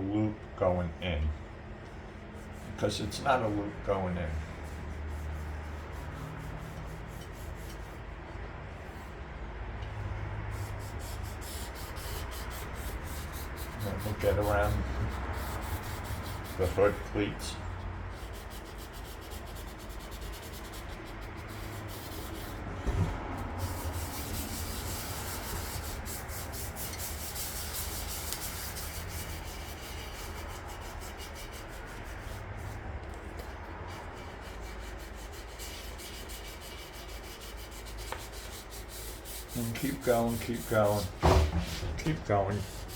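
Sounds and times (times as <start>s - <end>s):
sandpaper rubbing by hand: 10.5s - 22.7s, 23.4s - 32.8s, 33.9s - 42.9s.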